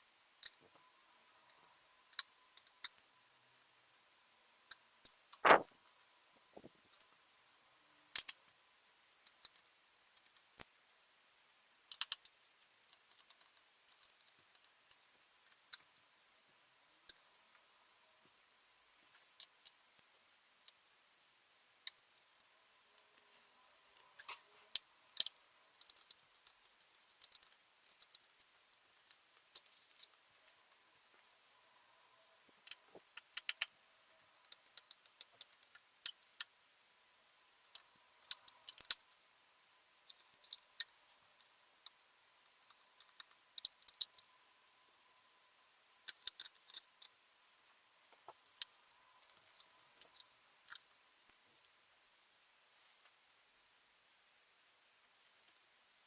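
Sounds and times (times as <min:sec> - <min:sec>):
plastic laptop parts clicking: 0:11.9 - 0:12.3, 0:24.2 - 0:29.7, 0:32.6 - 0:33.7, 0:37.7 - 0:39.0, 0:46.0 - 0:47.1.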